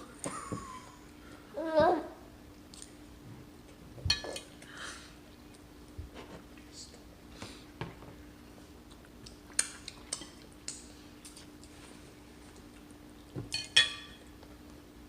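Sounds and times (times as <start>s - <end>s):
utensils and dishes clinking: 13.5s - 14.3s.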